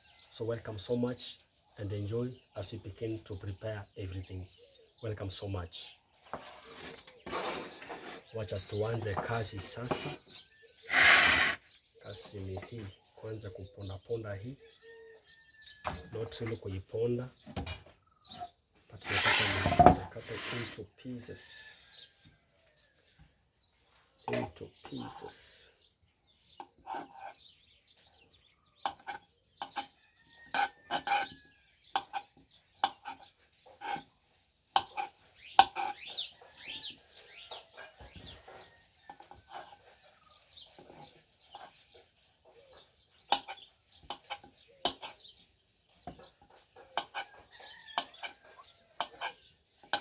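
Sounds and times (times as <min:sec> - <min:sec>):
birds chirping: 0:00.0 - 0:34.1, 0:34.8 - 0:50.0
chickens clucking: 0:18.1 - 0:20.8, 0:28.0 - 0:50.0.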